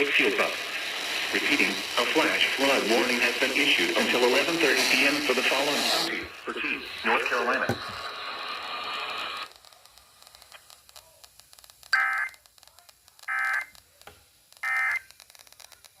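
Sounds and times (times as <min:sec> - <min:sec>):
faint static crackles: 0:00.0 - 0:16.0
steady hiss: 0:00.0 - 0:16.0
digital data tone bursts: 0:11.9 - 0:12.4, 0:13.2 - 0:13.8, 0:14.6 - 0:15.1.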